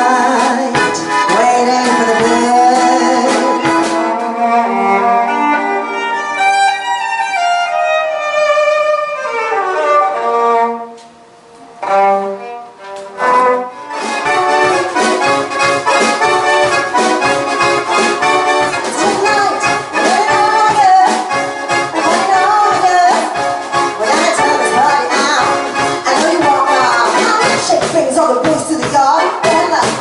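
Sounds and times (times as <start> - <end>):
steady drum beat: 0.0 - 4.3, 13.9 - 30.0
accordion: 0.0 - 11.0, 11.7 - 30.0
violin solo: 0.7 - 27.9.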